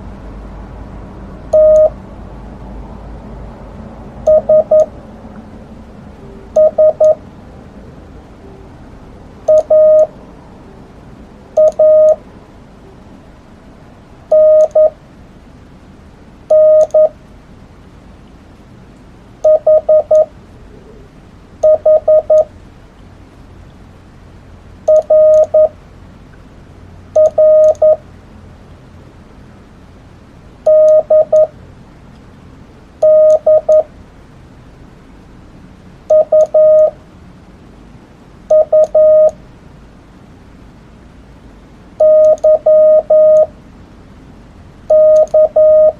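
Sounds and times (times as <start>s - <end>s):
morse code tone: 1.5s - 2.0s, 4.3s - 4.9s, 6.5s - 7.2s, 9.5s - 10.2s, 11.6s - 12.2s, 14.3s - 15.0s, 16.5s - 17.2s, 19.4s - 20.3s, 21.6s - 22.5s, 24.9s - 25.8s, 27.2s - 28.0s, 30.7s - 31.5s, 33.0s - 33.9s, 36.1s - 37.0s, 38.5s - 39.4s, 42.0s - 43.5s, 44.9s - 45.9s
faint keying clicks: 42.1s - 42.6s, 44.9s - 45.5s.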